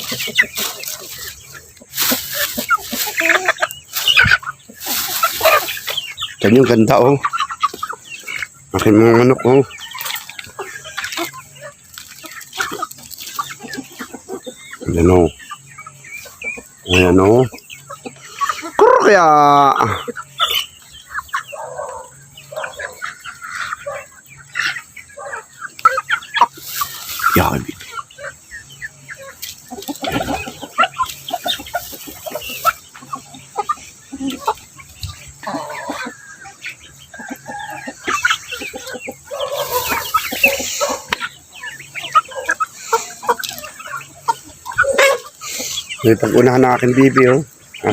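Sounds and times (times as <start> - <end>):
chickens clucking: 0.0 - 47.9.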